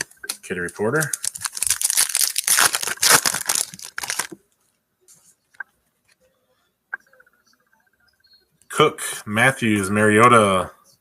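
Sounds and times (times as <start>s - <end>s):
wrapper tearing and crinkling: 0.7s - 4.4s.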